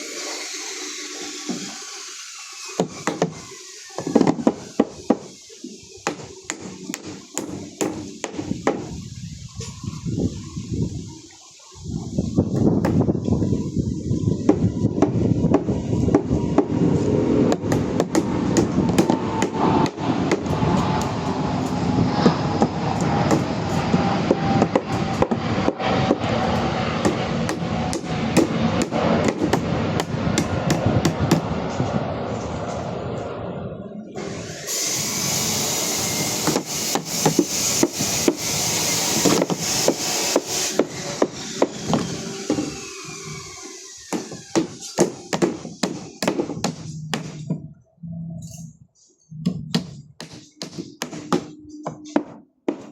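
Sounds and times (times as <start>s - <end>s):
steady hum: 12.4s - 43.6s.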